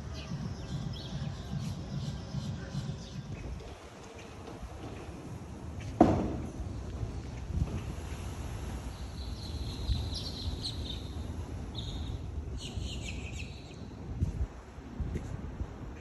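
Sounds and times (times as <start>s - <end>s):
birds chirping: 8.9s - 13.8s.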